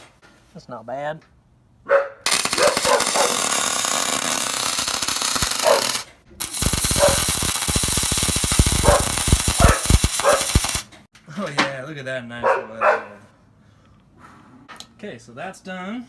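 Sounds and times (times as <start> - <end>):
welding arc crackling: 2.3 - 11.0.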